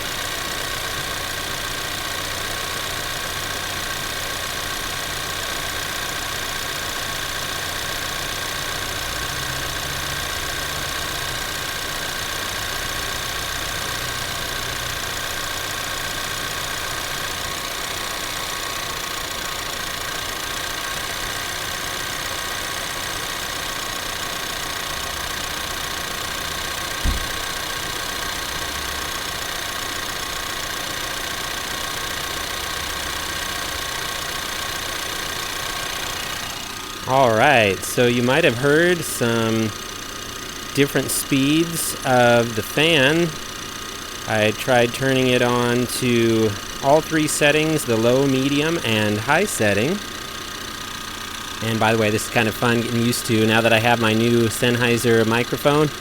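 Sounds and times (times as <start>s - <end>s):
car engine idling: 0.0s - 56.0s
blower fan rushing: 25.2s - 30.3s
sharp knock: 27.0s - 27.4s.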